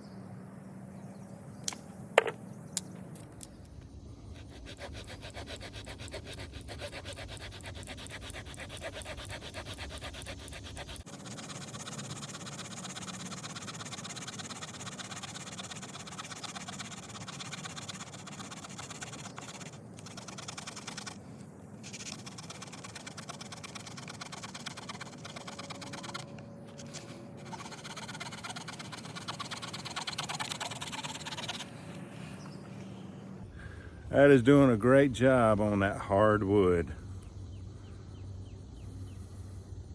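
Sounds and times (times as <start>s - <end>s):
small saw rasping through wood: 4.5s - 21.2s, 21.8s - 32.2s.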